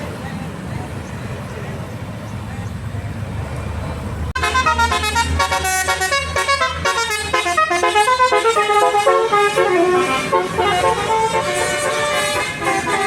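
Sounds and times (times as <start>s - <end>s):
bus engine rumble: 0.0s - 13.0s
bus musical air horn tune: 4.4s - 13.0s.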